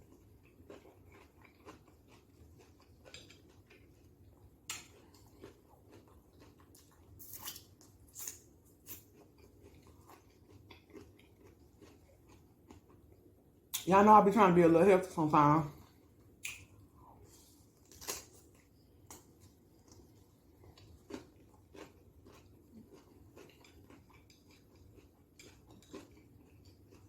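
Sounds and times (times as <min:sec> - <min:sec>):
cucumber crunching: 0:09.9 - 0:12.8, 0:17.8 - 0:19.3.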